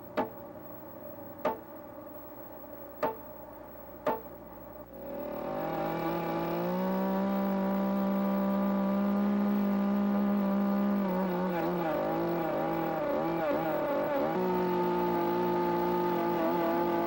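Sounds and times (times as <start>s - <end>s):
chainsaw cutting log: 5.0s - 17.0s.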